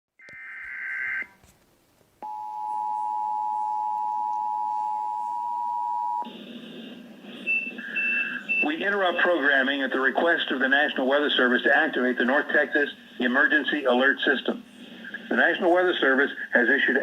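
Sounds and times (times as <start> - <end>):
data burst tones: 7.4 - 9.6.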